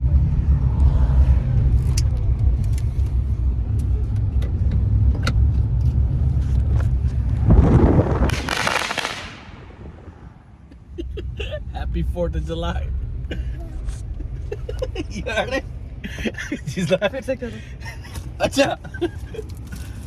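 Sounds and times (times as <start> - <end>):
car road rumble: 0.0 - 20.0
rushing noise: 6.0 - 16.4.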